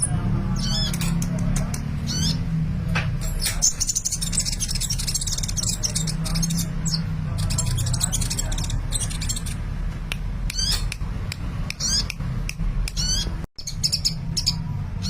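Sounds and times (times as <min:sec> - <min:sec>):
sunbird chirping and trilling: 0:00.0 - 0:02.6, 0:03.2 - 0:09.8, 0:10.4 - 0:10.9, 0:11.7 - 0:12.2, 0:12.9 - 0:15.0.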